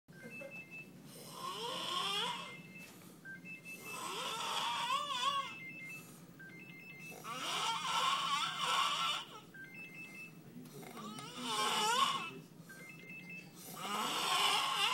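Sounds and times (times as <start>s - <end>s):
person snoring with whistling: 1.2s - 2.6s, 3.7s - 5.6s, 13.6s - 14.9s.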